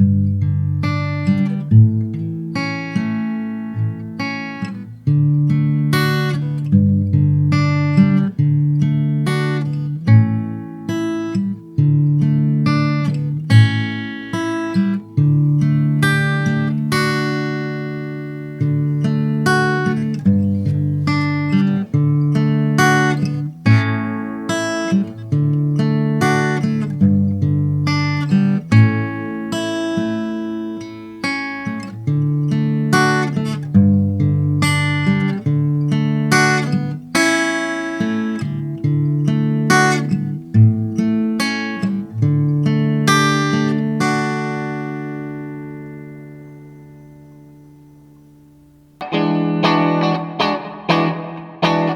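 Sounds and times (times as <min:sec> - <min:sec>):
acoustic guitar chords: 0:00.0 - 0:51.9.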